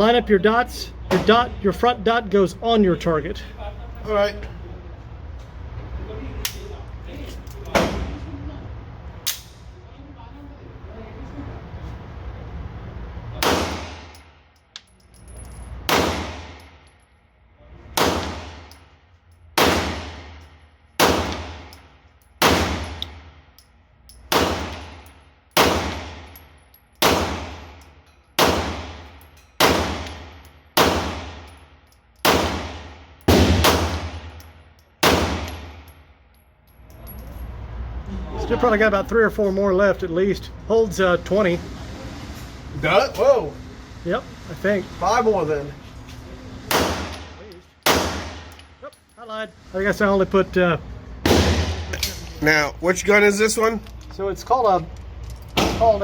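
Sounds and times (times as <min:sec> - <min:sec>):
pistol shots echoing indoors: 0:19.6 - 0:21.8, 0:24.3 - 0:26.3, 0:27.0 - 0:27.8, 0:28.4 - 0:31.6, 0:32.2 - 0:35.8, 0:46.7 - 0:48.6.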